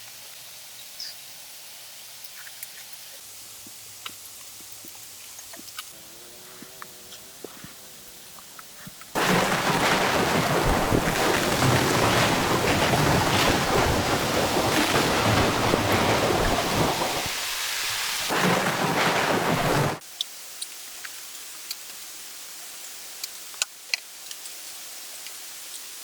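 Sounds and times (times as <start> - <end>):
heavy rain: 9.1 - 20.5
rumbling thunder: 9.2 - 20.0.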